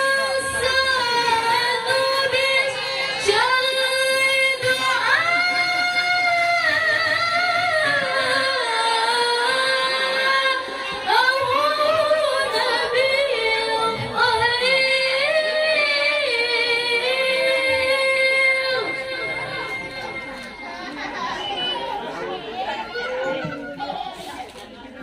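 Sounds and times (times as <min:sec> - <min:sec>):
woman reciting melodically: 0:00.0 - 0:21.6.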